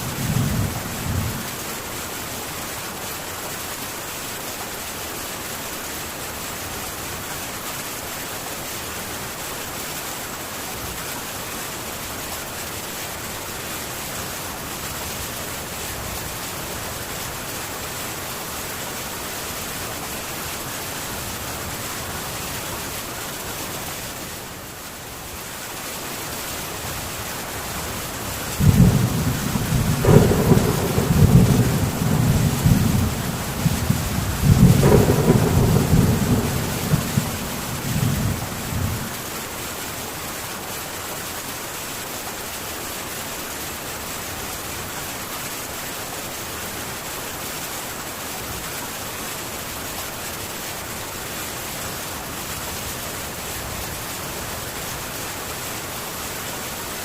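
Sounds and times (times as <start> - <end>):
low rumble of thunder: 0.0 - 1.6, 28.6 - 39.3
heavy rain on a tin roof: 0.0 - 57.0.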